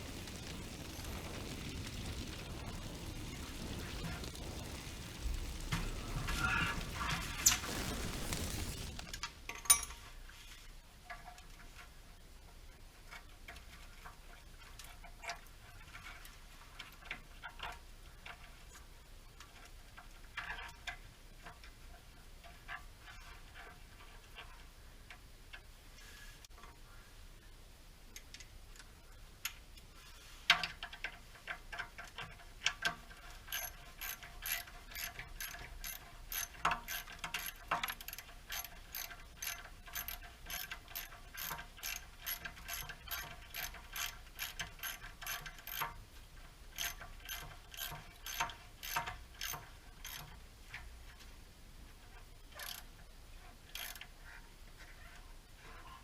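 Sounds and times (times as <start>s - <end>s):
ratchet wrench clicking: 33.5s - 45.9s, 46.8s - 50.4s, 52.6s - 52.8s, 53.7s - 54.1s.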